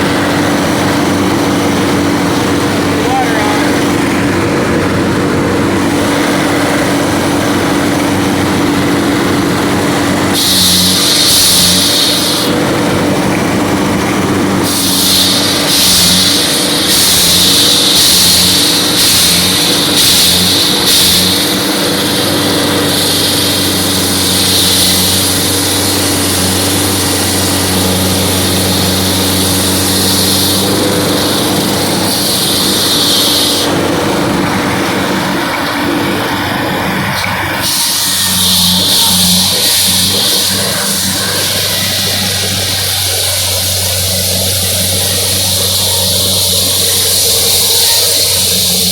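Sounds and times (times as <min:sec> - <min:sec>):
concrete saw engine running: 0:00.0 - 0:48.9
saw blade hissing in cut: 0:05.8 - 0:12.6, 0:14.5 - 0:34.3, 0:37.2 - 0:48.9.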